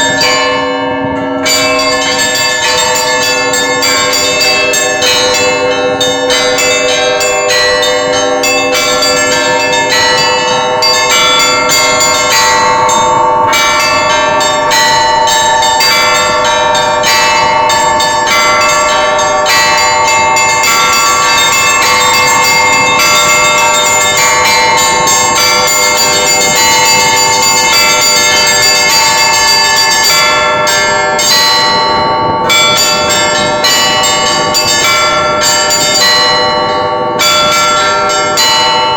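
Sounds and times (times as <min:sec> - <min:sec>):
church bells ringing: 0:00.0 - 0:38.9.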